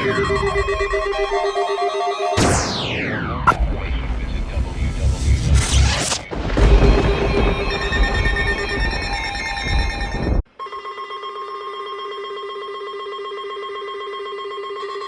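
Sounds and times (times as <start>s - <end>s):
steady electronic alert tone: 0.0s - 6.3s
loud music: 0.0s - 8.4s
pulsing electronic tone: 0.0s - 8.9s.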